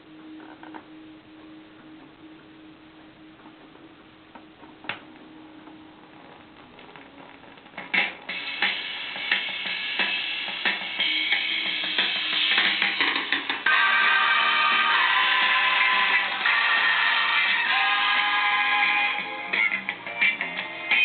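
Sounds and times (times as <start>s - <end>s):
faint steady hum: 0.0s - 21.0s
music with drums: 7.7s - 21.0s.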